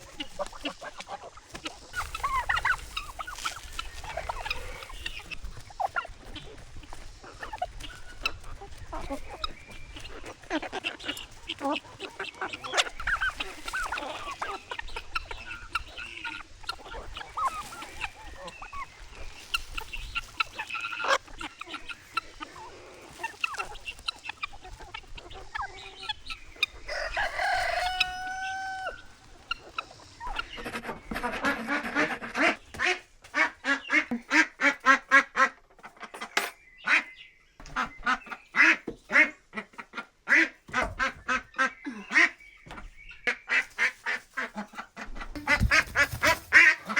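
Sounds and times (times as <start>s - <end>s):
chickens clucking: 0.0s - 46.9s
ducks quacking: 0.0s - 46.9s
rooster crowing: 26.9s - 29.1s.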